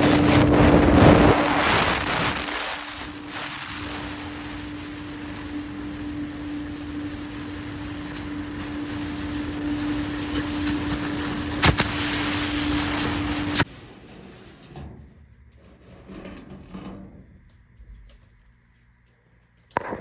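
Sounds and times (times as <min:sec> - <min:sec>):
machine motor humming: 0:00.0 - 0:14.9.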